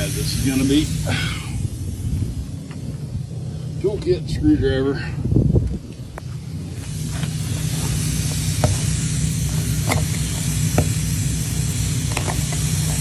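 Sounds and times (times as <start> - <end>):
air hissing from a tyre: 0.0 - 13.0
vehicle engine idling: 0.0 - 13.0.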